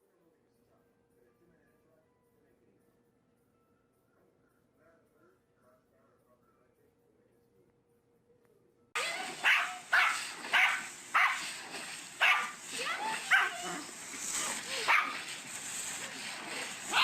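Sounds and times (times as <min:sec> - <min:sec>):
dog barking: 0:09.0 - 0:17.0.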